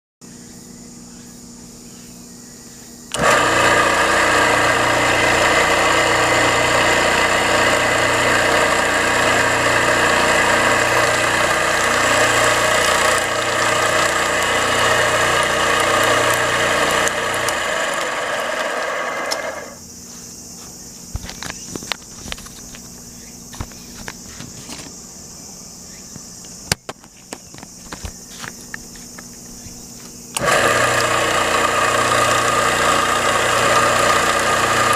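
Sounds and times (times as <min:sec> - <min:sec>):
electric sprayer pump pulsing: 0:03.1 - 0:19.8, 0:27.8 - 0:34.9.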